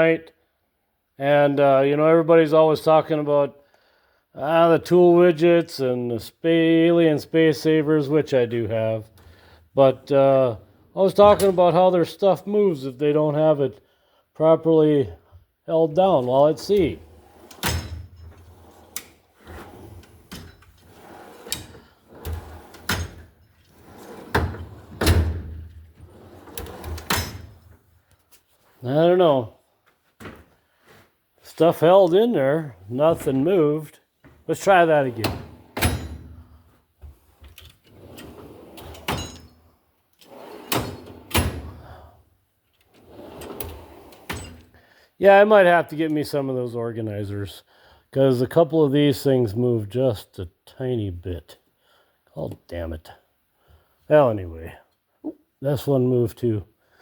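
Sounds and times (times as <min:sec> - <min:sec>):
drawer sliding rumble: 0:16.7 - 0:27.7, 0:40.2 - 0:41.9, 0:43.0 - 0:44.7
toolbox drawers slamming shut: 0:16.9 - 0:27.7, 0:35.0 - 0:36.4.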